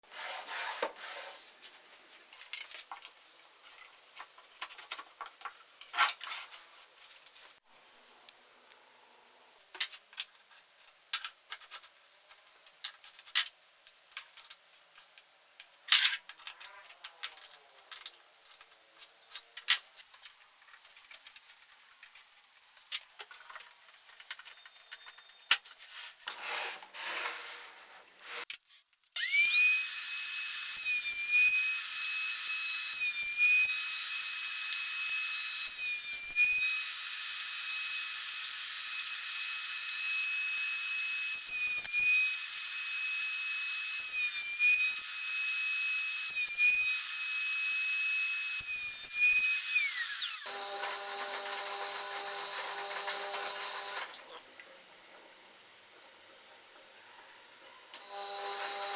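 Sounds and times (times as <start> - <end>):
clicks and knocks of wood and tools: 1.6 - 7.4, 9.7 - 26.4
wood router whining: 29.2 - 54.3, 58.0 - 58.9.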